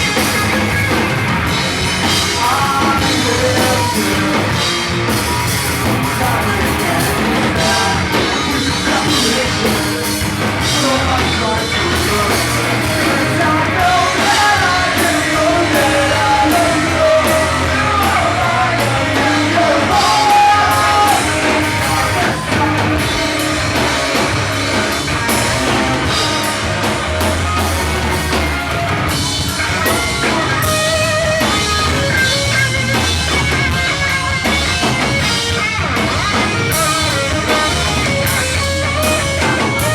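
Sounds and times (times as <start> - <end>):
pop punk band playing live: 0.0 - 39.9
person singing: 2.1 - 4.9, 6.0 - 27.0.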